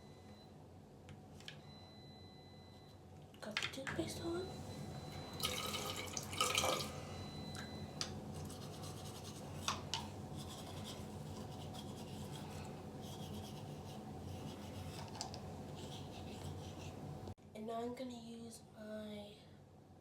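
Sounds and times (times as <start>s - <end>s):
toothbrush scrubbing teeth: 8.4s - 17.0s.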